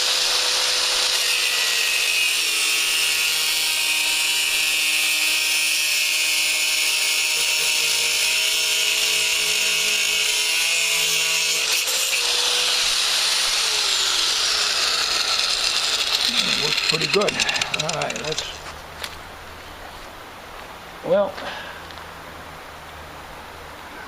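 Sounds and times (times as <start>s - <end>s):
power tool cutting metal tube: 0.0s - 18.5s.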